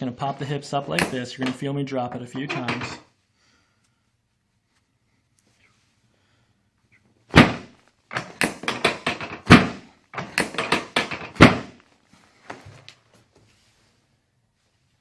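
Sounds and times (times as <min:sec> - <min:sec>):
table section dropping with clunk: 0:02.4 - 0:03.0, 0:07.3 - 0:11.8.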